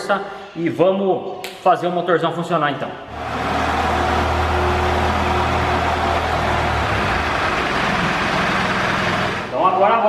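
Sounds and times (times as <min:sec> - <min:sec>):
low hum: 0:03.1 - 0:09.5
diesel engine cranking: 0:03.1 - 0:09.6.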